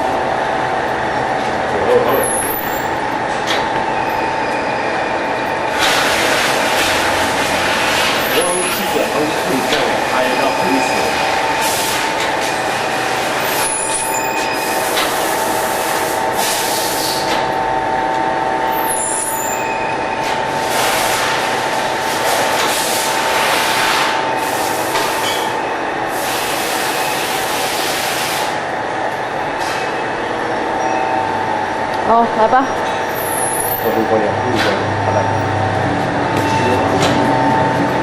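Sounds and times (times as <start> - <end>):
machine hum: 0.0 - 38.0.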